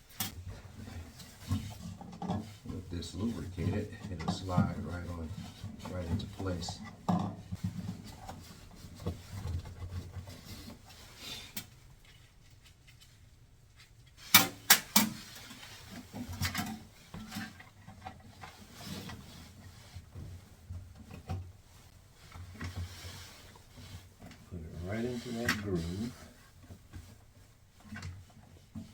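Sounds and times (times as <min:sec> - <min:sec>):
rubbing and light knocks: 0:00.0 - 0:28.9.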